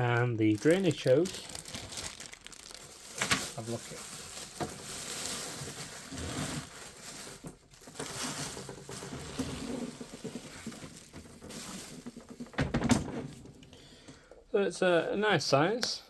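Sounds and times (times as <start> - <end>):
plastic wrapping rustling: 0.0 - 12.6.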